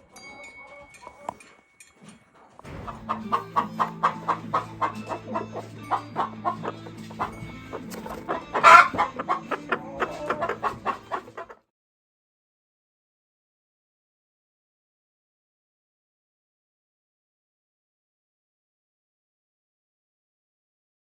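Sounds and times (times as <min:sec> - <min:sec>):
chickens clucking: 0:00.0 - 0:11.7
chicken squawk: 0:02.7 - 0:11.6.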